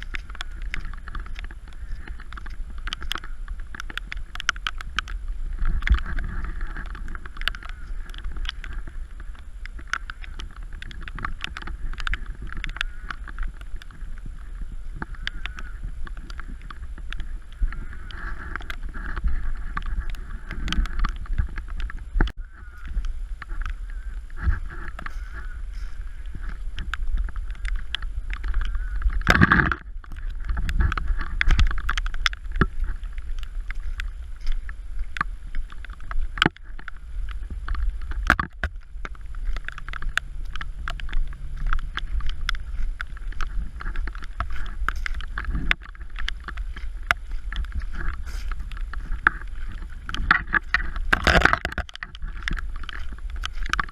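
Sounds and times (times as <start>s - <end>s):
rain falling and splashing: 0.0s - 53.9s
wind buffeting the microphone: 0.0s - 53.9s.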